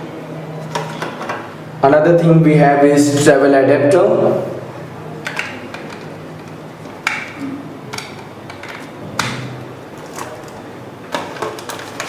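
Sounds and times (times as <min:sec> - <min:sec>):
hard objects clicking and knocking: 0:05.2 - 0:12.0.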